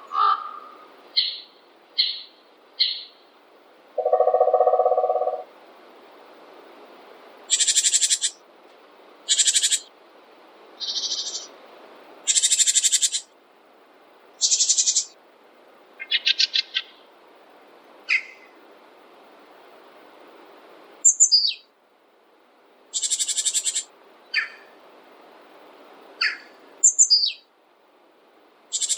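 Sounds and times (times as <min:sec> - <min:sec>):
faint steady hiss: 0:00.0 - 0:28.9
songbird trilling: 0:00.1 - 0:03.2, 0:04.0 - 0:05.5, 0:07.5 - 0:08.4, 0:09.3 - 0:09.9, 0:10.8 - 0:11.5, 0:12.3 - 0:13.3, 0:14.4 - 0:15.2, 0:16.0 - 0:17.0, 0:18.1 - 0:18.5, 0:21.0 - 0:21.6, 0:22.9 - 0:24.7, 0:26.2 - 0:27.5.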